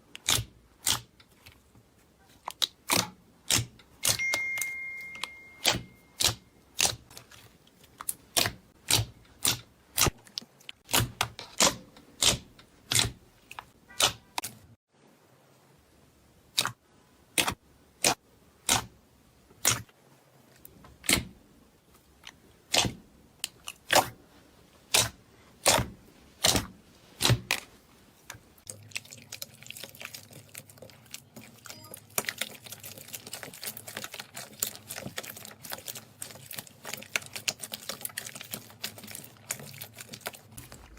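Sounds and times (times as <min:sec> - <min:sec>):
slime soft crackling: 0:27.0 - 0:40.9.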